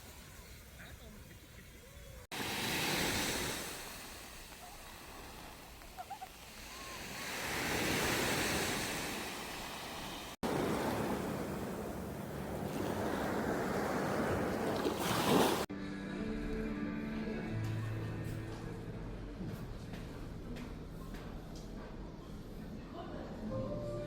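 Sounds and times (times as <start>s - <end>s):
sea waves washing in: 2.3s - 15.7s.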